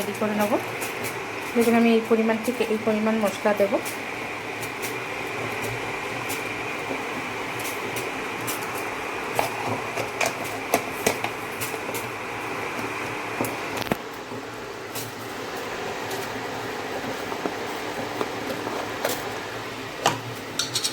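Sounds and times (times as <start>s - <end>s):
induction cooktop humming: 0.0s - 20.9s
utensils clicking and tapping: 5.6s - 12.1s, 20.0s - 20.9s.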